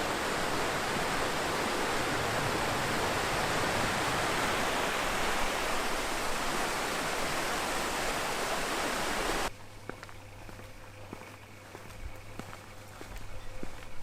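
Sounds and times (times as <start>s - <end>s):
rushing water: 0.0s - 9.5s.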